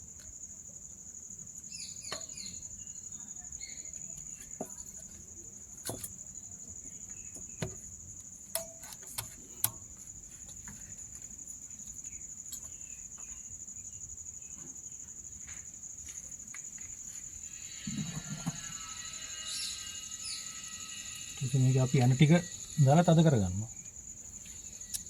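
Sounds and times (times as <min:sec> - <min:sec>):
crickets chirring: 0:00.0 - 0:25.0
hand tools clicking: 0:08.5 - 0:10.8.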